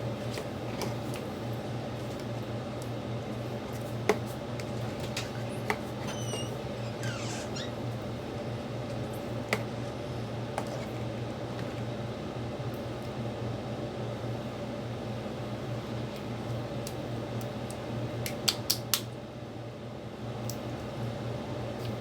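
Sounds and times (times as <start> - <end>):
short high squeak: 5.5 - 7.8.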